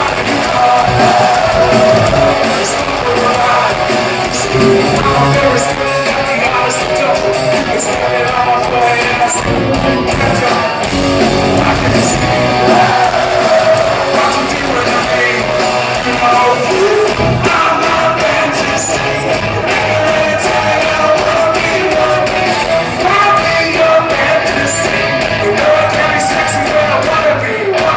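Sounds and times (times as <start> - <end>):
steady drum beat: 0.0 - 6.8
electric guitars: 0.0 - 27.9.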